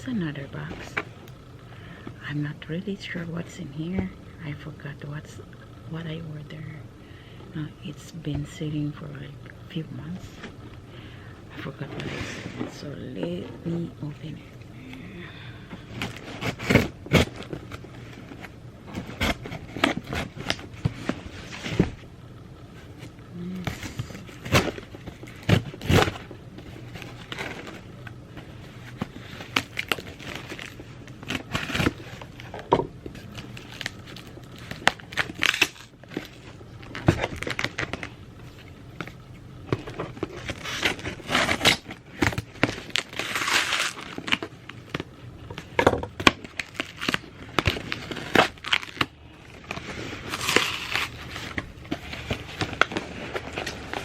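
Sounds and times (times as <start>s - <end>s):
packaging crinkling and tearing: 15.8s - 22.0s, 23.0s - 54.0s.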